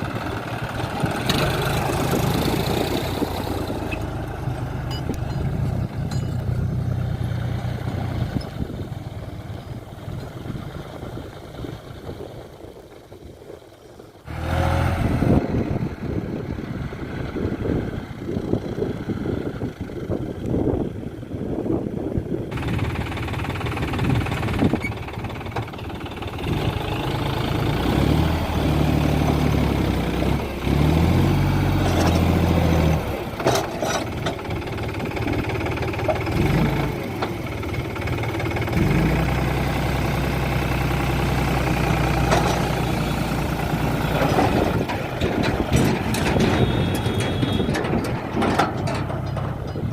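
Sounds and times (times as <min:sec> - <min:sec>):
diesel engine revving: 0:00.0 - 0:13.6, 0:14.2 - 0:49.9
metal knocks and clanks: 0:04.6 - 0:06.7, 0:44.2 - 0:49.9.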